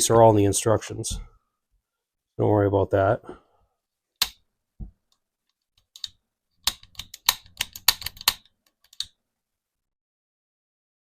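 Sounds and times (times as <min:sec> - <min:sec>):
small hard parts clicking: 0:05.8 - 0:09.1.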